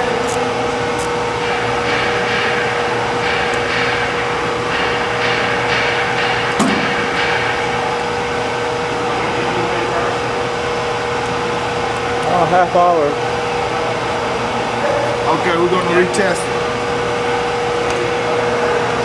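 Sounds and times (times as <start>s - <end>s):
steady machine hum: 0.0s - 19.0s.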